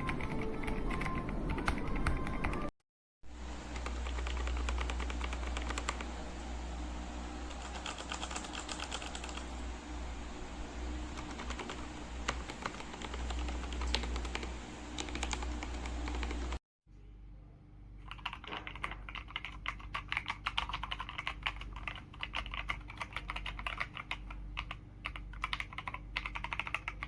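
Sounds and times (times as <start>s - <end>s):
mechanical keyboard typing: 0.0s - 2.7s, 3.7s - 6.2s, 7.5s - 9.5s, 11.1s - 16.6s, 18.0s - 27.0s
low hum: 3.3s - 19.2s.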